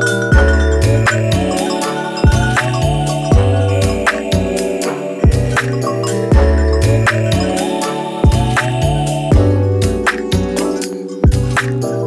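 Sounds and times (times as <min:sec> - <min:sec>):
bass line: 0:00.0 - 0:07.7, 0:08.3 - 0:10.6
sustained melody notes: 0:00.0 - 0:12.0.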